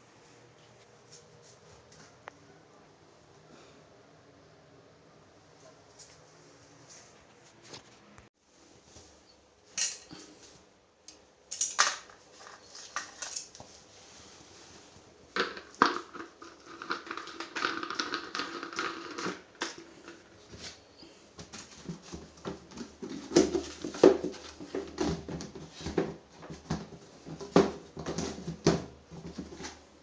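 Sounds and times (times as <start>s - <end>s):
hard objects clinking and knocking: 15.4s - 20.2s.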